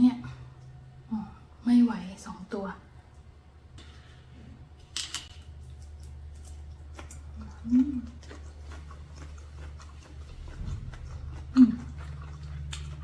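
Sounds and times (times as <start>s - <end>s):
steady low hum: 0.0s - 13.0s
person chewing food: 5.5s - 13.0s.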